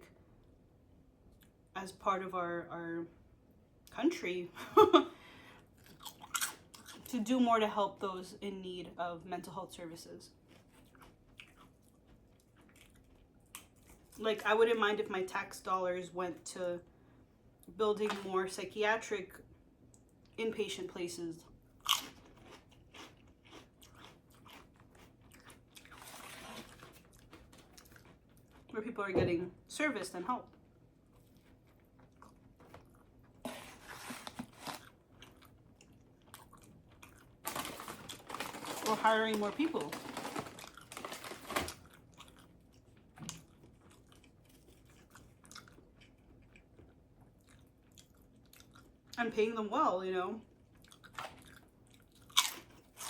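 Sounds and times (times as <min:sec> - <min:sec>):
chewing and crunching food: 0:01.2 - 0:01.7, 0:05.6 - 0:08.3, 0:09.4 - 0:14.8, 0:21.4 - 0:29.0, 0:30.2 - 0:49.5, 0:50.4 - 0:53.0
crunchy biting and chewing: 0:05.8 - 0:07.1, 0:10.4 - 0:14.2, 0:21.8 - 0:28.7, 0:50.8 - 0:53.0.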